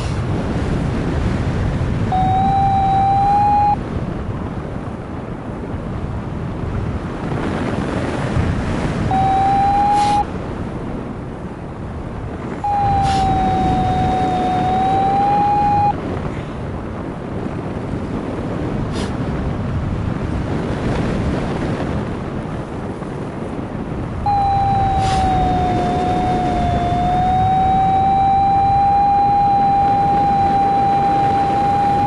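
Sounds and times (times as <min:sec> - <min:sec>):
wind rushing over microphone: 0:00.0 - 0:32.0
steady electronic tone: 0:02.1 - 0:03.8, 0:09.1 - 0:10.2, 0:12.6 - 0:16.0, 0:24.3 - 0:32.0.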